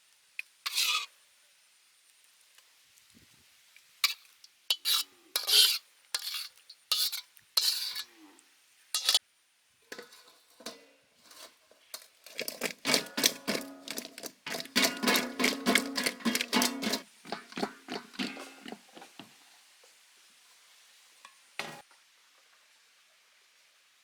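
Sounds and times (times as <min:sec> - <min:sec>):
utensil scraping metal cookware: 0:00.7 - 0:01.1, 0:04.0 - 0:08.2, 0:09.0 - 0:09.2, 0:09.9 - 0:19.3.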